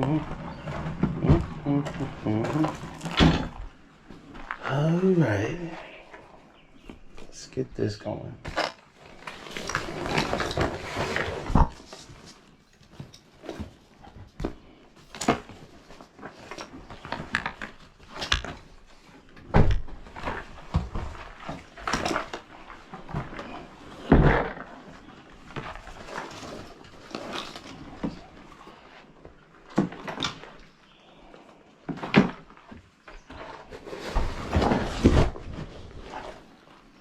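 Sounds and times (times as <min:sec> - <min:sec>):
camping gear knocks and clatters: 0:08.4 - 0:37.0.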